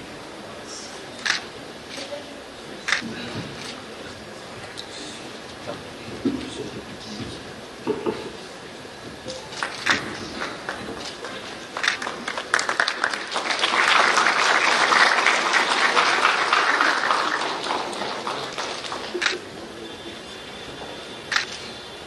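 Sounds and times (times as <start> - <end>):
audience applauding: 9.5 - 19.5.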